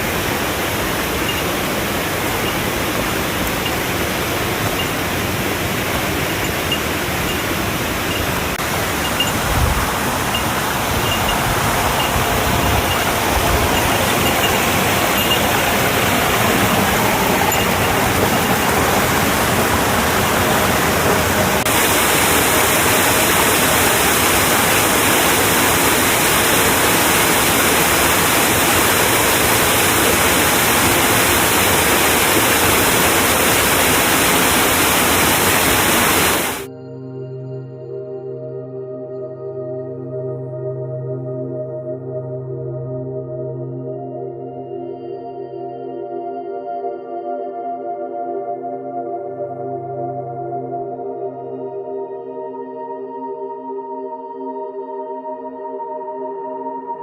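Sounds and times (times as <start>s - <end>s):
waterfall pouring: 0.0s - 36.7s.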